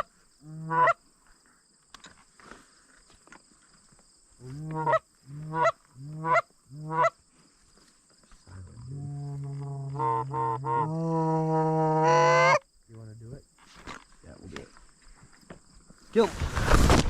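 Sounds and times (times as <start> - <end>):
goose call honks: 0.6 - 1.0, 4.7 - 7.1, 9.9 - 11.0, 11.8 - 12.6
long low moan of goose call: 8.5 - 12.6.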